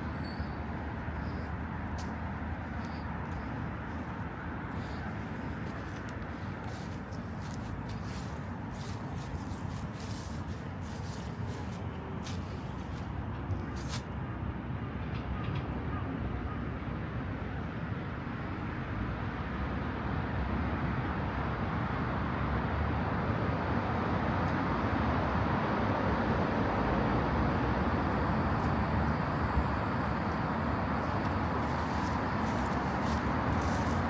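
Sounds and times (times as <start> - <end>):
road traffic passing: 0.0 - 34.0.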